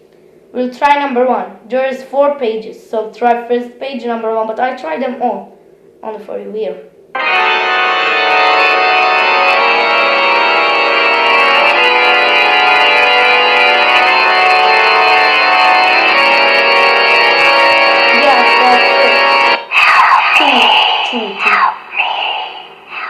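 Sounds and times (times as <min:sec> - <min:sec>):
horror organ music: 0:07.2 - 0:22.0.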